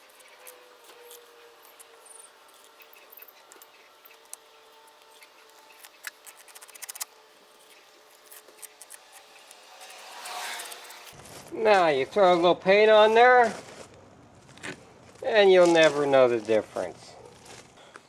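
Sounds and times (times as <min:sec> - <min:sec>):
hand tool scratching plaster: 0:00.0 - 0:11.2.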